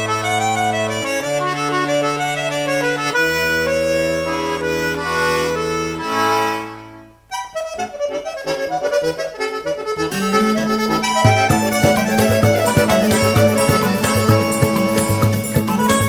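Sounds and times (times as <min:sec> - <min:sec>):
accordion chords: 0:00.0 - 0:16.0
folk tune with plucked notes: 0:00.0 - 0:16.0
bass line: 0:10.2 - 0:16.0
drum beat: 0:11.1 - 0:16.0.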